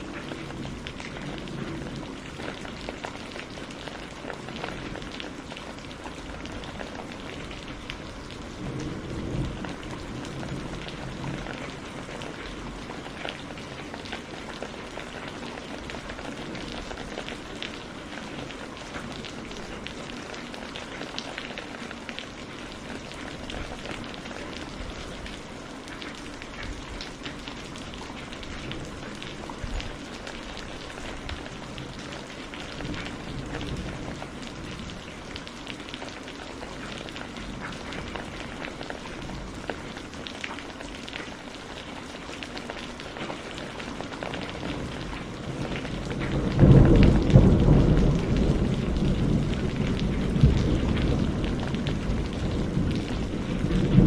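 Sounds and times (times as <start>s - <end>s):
steady rain patter: 0.0s - 54.0s
rumbling thunder: 7.3s - 12.9s, 44.6s - 54.0s.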